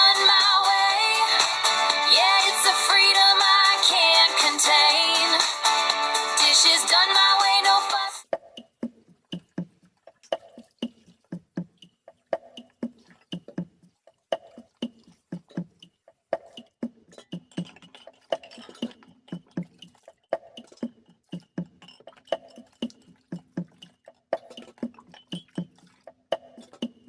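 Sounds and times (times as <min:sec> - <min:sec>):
steady instrumental beat: 0:00.0 - 0:06.8.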